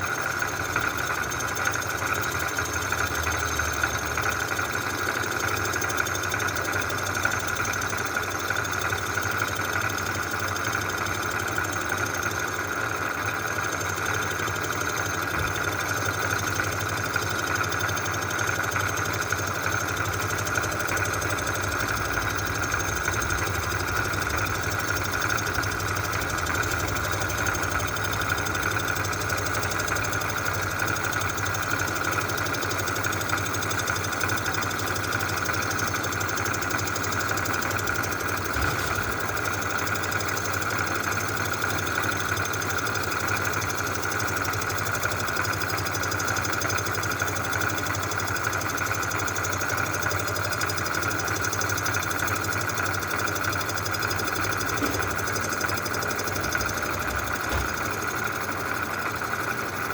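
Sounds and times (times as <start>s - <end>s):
machine motor whining: 17.9s - 40.8s, 53.8s - 59.9s.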